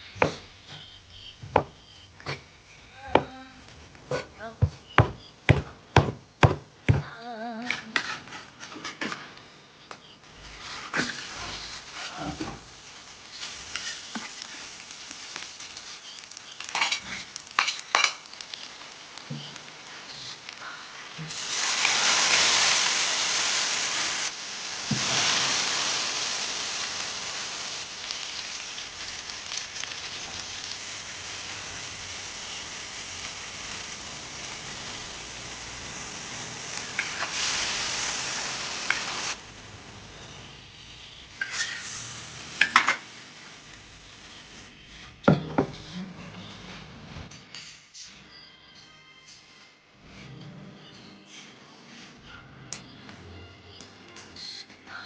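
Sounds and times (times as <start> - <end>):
food sizzling in hot oil: 0.0 - 7.0, 10.3 - 45.3
utensils knocking on a pan: 4.1 - 7.0.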